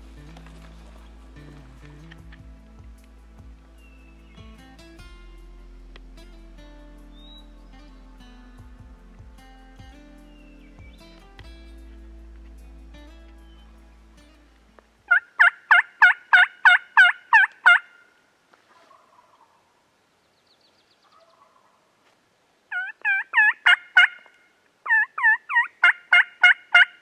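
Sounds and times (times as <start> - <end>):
turkey yelping: 15.1 - 18.0, 22.7 - 24.3, 24.9 - 27.0.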